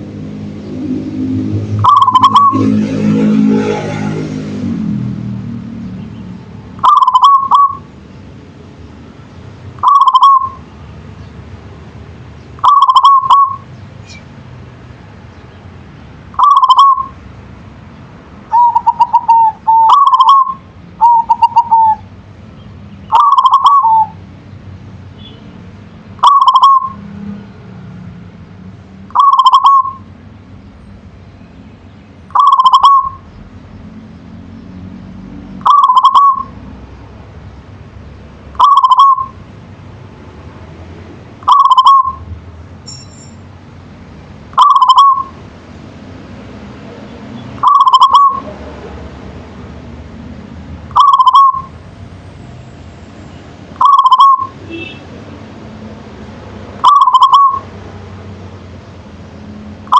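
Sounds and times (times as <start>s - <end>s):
dove cooing: 0.7s - 3.0s, 6.8s - 7.8s, 9.8s - 10.6s, 12.6s - 13.6s, 16.4s - 17.1s, 18.5s - 22.1s, 23.1s - 24.2s, 26.2s - 27.0s, 29.1s - 30.0s, 32.3s - 33.2s, 35.6s - 36.6s, 38.6s - 39.4s, 41.5s - 42.2s, 44.6s - 45.4s, 47.6s - 48.5s, 51.0s - 51.7s, 53.8s - 54.9s, 56.8s - 57.7s.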